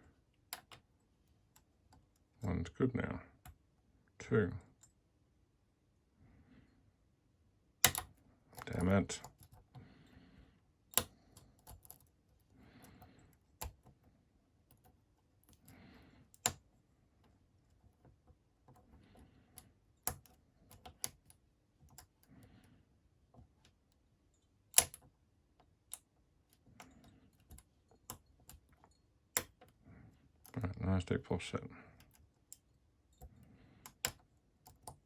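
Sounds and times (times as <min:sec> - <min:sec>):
lock pick clicking: 0:07.8 - 0:09.7, 0:24.7 - 0:25.0
pick scraping against lock pins: 0:10.9 - 0:14.0, 0:17.6 - 0:22.3.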